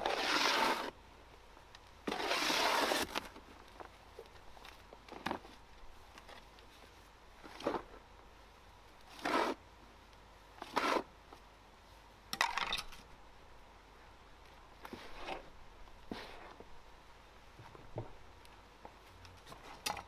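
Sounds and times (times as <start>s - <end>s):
short scrapes and rustles: 0.0s - 0.9s, 2.1s - 3.4s, 14.8s - 16.7s.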